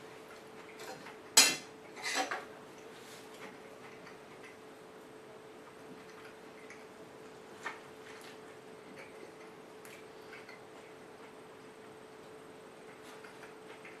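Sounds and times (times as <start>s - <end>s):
low electrical hum: 0.0s - 14.0s
faint chewing mouth clicks: 7.7s - 11.4s.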